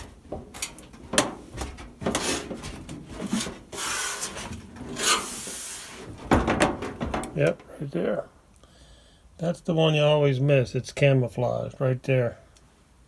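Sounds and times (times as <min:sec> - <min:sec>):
plastic cover scraping: 0:00.0 - 0:07.6.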